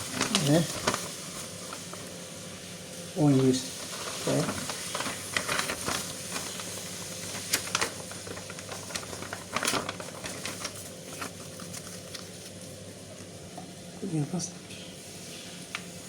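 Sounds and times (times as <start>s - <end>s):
paper rustling and crackling: 0.0s - 2.2s, 3.2s - 12.9s.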